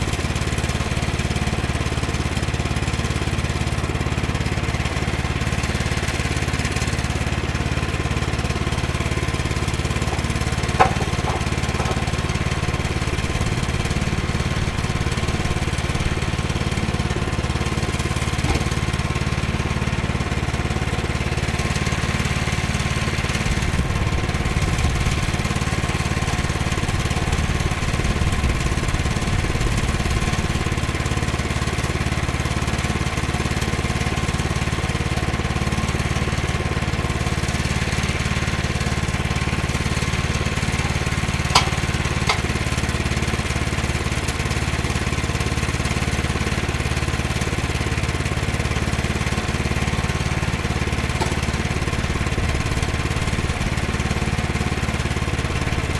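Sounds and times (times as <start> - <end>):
small gasoline engine running: 0.0 - 55.9
sharp knocks: 9.6 - 13.5, 41.5 - 42.6.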